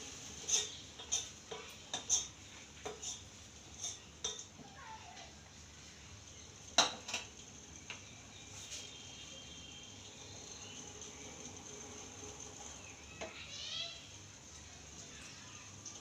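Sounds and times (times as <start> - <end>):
utensil clinking on pot: 0.4 - 3.2, 3.8 - 4.5.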